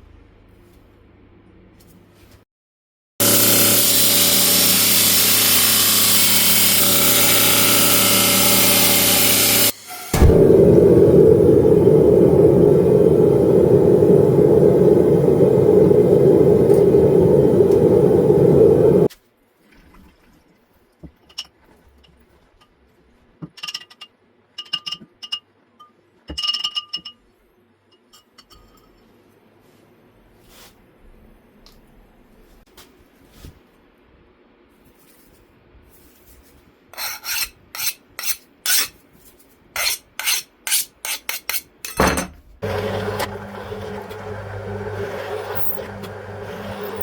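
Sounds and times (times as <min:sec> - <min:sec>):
electric grinder on steel: 0:03.2 - 0:10.3, 0:42.6 - 0:47.0
deep loud rumble: 0:10.2 - 0:19.1.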